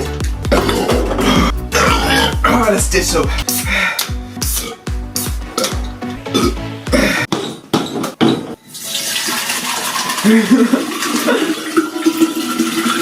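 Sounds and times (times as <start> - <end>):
running liquid rushing: 8.8 - 13.0.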